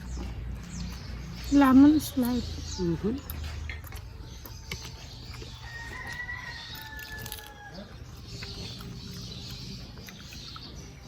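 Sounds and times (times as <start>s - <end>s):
rooster crowing: 5.6s - 8.0s.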